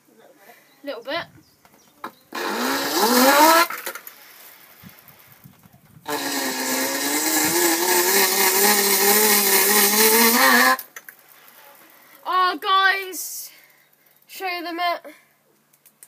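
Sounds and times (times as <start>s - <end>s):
handheld power tool grinding: 2.3s - 4.1s, 6.1s - 11.0s.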